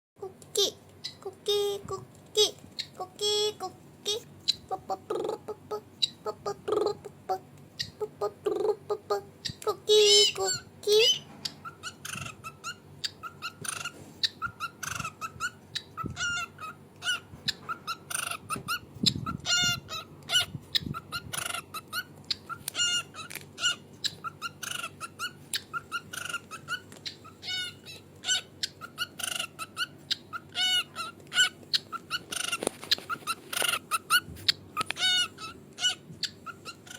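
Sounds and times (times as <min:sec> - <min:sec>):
parrot calling: 0:07.8 - 0:36.9.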